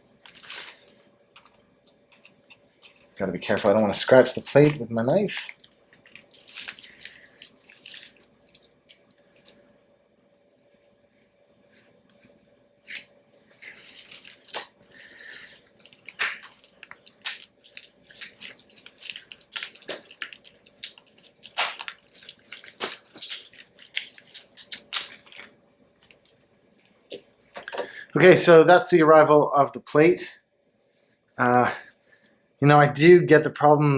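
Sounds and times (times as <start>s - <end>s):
packaging crinkling and rustling: 0.1s - 9.8s, 12.1s - 27.8s
knife cutting packaging: 0.2s - 8.6s, 12.8s - 25.5s.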